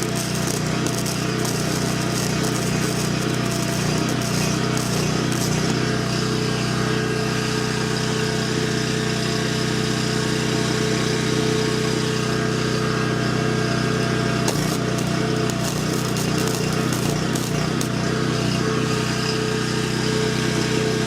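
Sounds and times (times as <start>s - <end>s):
welding arc crackling: 0.0s - 6.3s, 14.4s - 18.6s
small generator engine running: 0.0s - 21.0s.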